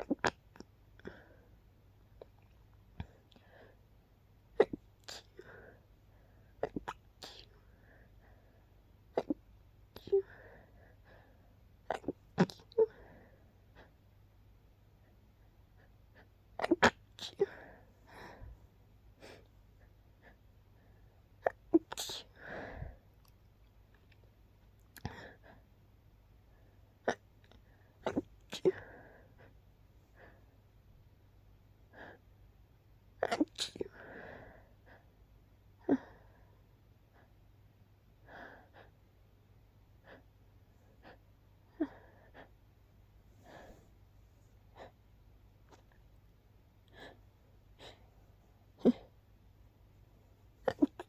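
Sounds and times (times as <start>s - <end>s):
stifled sneeze: 4.6s - 5.4s, 16.6s - 17.5s, 21.4s - 22.3s, 28.0s - 28.8s, 33.2s - 33.9s, 50.6s - 51.0s
soft breathing: 10.0s - 11.7s, 17.3s - 21.2s, 22.3s - 23.3s, 40.0s - 46.1s, 46.8s - 51.0s
person stifled sneeze: 28.0s - 28.7s, 33.2s - 33.9s, 50.6s - 51.0s.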